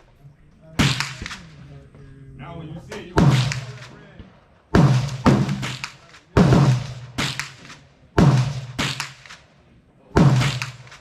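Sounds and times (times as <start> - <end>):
gunshots with echo: 0.8 - 1.7, 2.9 - 9.5, 10.1 - 11.0.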